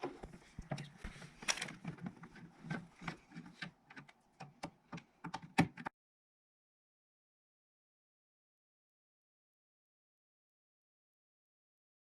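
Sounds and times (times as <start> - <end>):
clicks of computer parts being fitted: 0.0 - 5.9.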